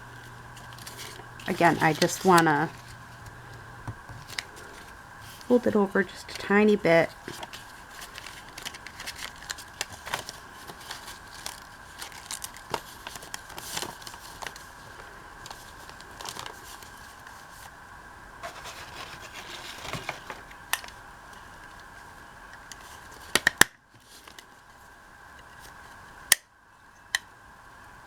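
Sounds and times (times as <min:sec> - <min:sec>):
paper rustling and crinkling: 0:00.2 - 0:17.7, 0:18.4 - 0:22.1, 0:24.0 - 0:24.8.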